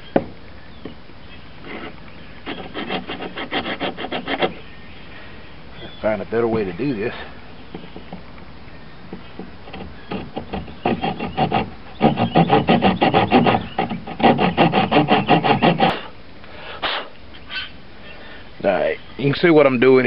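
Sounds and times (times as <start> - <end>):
hand saw cutting wood: 1.7 - 4.6, 9.7 - 16.1.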